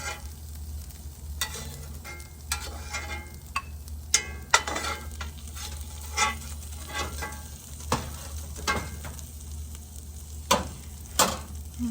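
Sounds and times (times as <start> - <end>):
utensil scraping pan: 0.0 - 0.4, 1.4 - 3.5, 4.2 - 9.2
food sizzling in a pan: 0.0 - 11.9.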